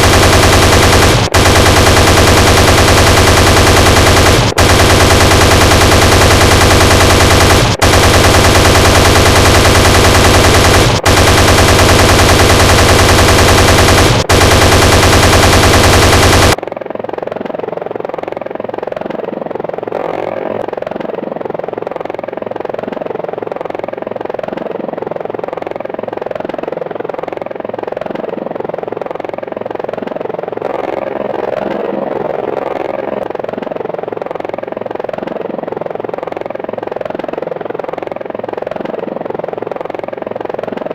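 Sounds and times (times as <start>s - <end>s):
chain gun firing bursts: 0.0s - 16.6s
helicopter rotor and engine: 0.0s - 40.9s.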